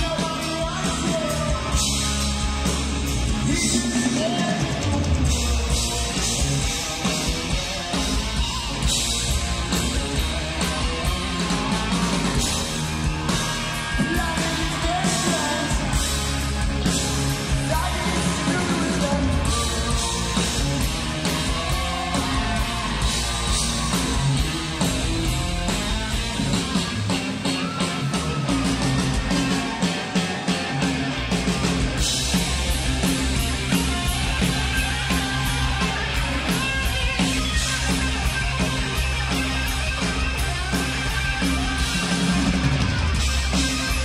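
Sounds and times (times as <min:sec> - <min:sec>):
live heavy metal band: 0:00.0 - 0:44.0
singer shouting vocals: 0:03.4 - 0:05.1, 0:13.2 - 0:16.0, 0:17.5 - 0:23.5.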